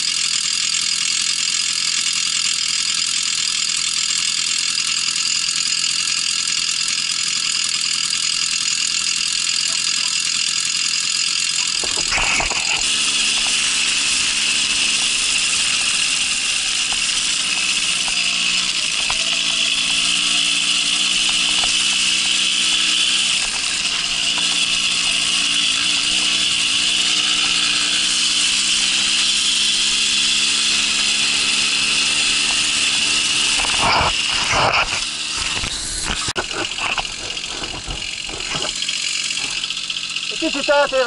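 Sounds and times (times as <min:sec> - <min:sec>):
moped engine running: 0:00.0 - 0:41.0
high whine: 0:11.6 - 0:41.0.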